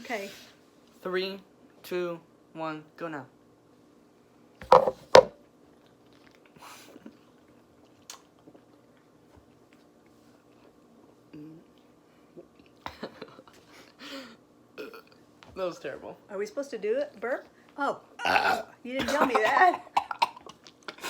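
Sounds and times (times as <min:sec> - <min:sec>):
soft mouth sounds: 0:11.3 - 0:12.8.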